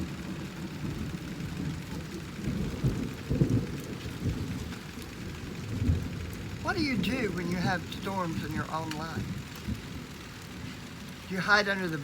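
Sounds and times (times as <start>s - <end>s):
steady rain: 0.0s - 12.0s
thunder rumbling: 0.0s - 12.0s.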